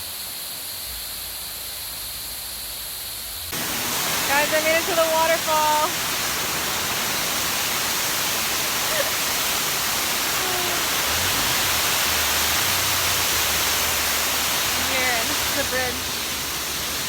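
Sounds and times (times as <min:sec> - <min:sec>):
waterfall rushing: 0:03.5 - 0:17.0.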